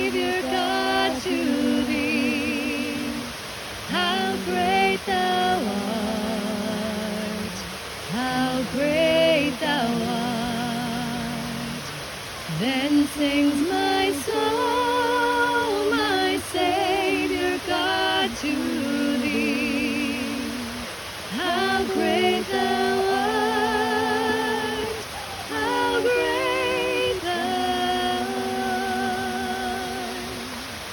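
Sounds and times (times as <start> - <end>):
waterfall rushing: 0.0 - 30.9
woman singing unaccompanied: 0.0 - 30.9.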